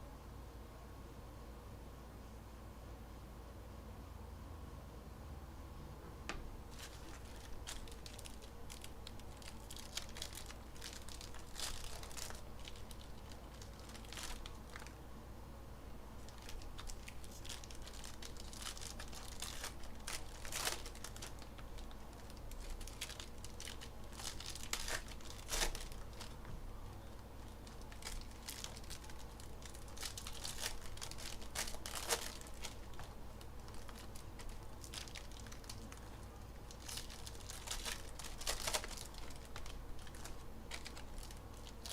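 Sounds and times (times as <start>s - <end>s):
foil packs tearing: 6.7s - 15.0s, 16.2s - 26.5s, 27.4s - 41.9s
foil wrappers crinkling: 6.7s - 15.0s, 16.2s - 41.9s.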